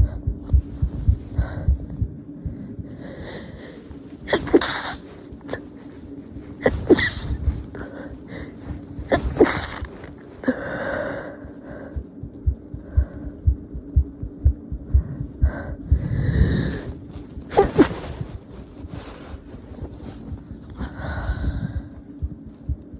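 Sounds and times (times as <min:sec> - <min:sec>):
heartbeat thumps: 0:00.0 - 0:03.4, 0:04.2 - 0:22.9
stifled sneezes: 0:04.3 - 0:05.0, 0:09.1 - 0:09.9.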